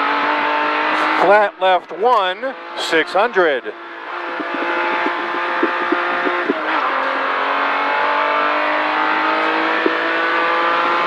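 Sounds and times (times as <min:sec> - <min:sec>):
car engine at full throttle: 0:00.0 - 0:11.0
short knocks: 0:04.2 - 0:06.6.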